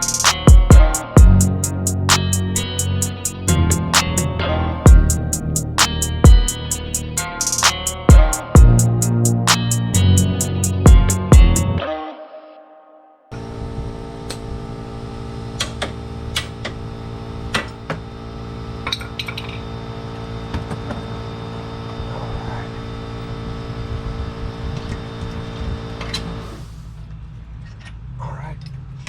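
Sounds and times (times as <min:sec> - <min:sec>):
steady electrical hum: 0:00.0 - 0:11.8.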